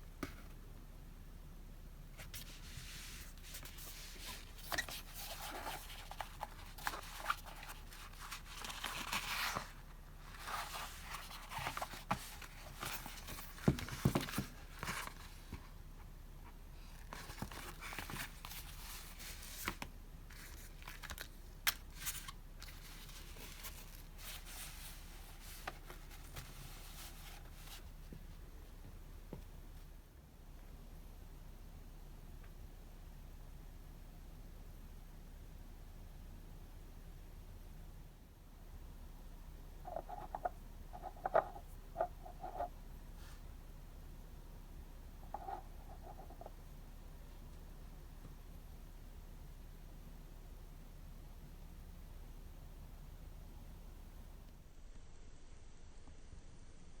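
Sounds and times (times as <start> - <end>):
paper and packaging rustling: 2.3 - 15.7, 16.9 - 27.8.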